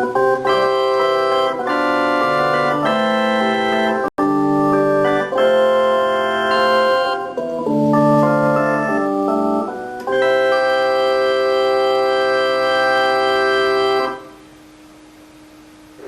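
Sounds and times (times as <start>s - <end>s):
keyboard organ chords: 0.0s - 14.5s
faint hum: 11.2s - 16.0s.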